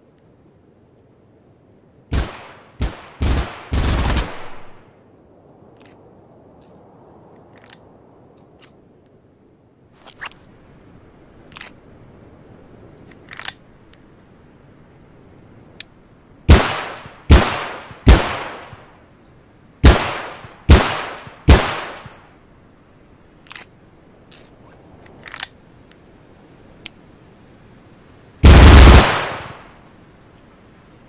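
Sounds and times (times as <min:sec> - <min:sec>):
full-auto gunfire burst: 0:02.1 - 0:04.7, 0:16.5 - 0:18.7, 0:19.8 - 0:22.1, 0:28.4 - 0:29.6
light gun clicks: 0:07.3 - 0:08.8, 0:13.0 - 0:14.0, 0:23.4 - 0:26.1
pistol shots: 0:16.5 - 0:18.8, 0:19.8 - 0:22.2.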